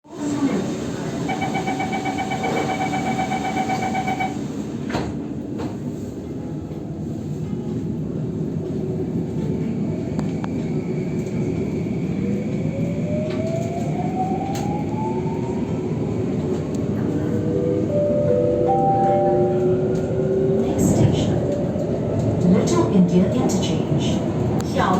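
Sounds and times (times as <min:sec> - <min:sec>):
train rumble: 0:00.0 - 0:24.9
pulsing warning beep: 0:01.3 - 0:04.5.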